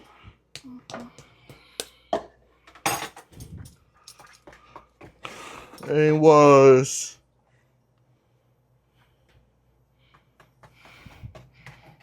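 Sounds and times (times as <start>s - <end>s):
person speaking: 5.8s - 7.1s.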